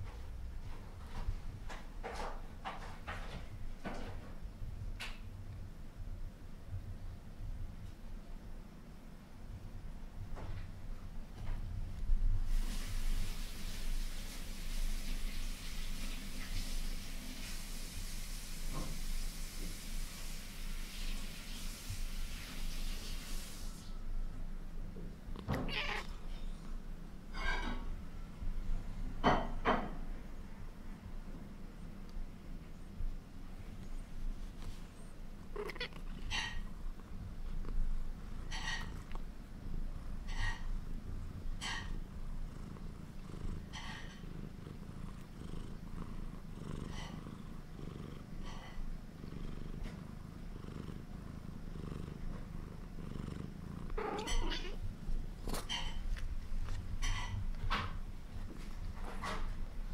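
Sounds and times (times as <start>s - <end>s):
low steady rumble: 3.5s - 12.5s
kitten crying: 25.5s - 26.2s, 54.0s - 54.8s
kitten making high calls: 25.6s - 26.1s.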